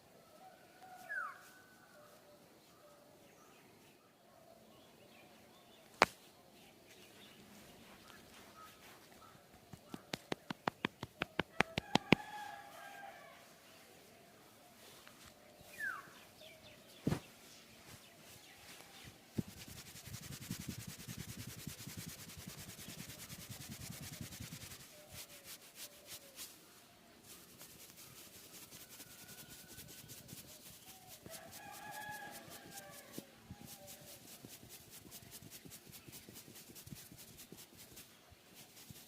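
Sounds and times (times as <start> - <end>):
hands rubbing and patting skin: 7.8 - 12.9, 17.9 - 39.0.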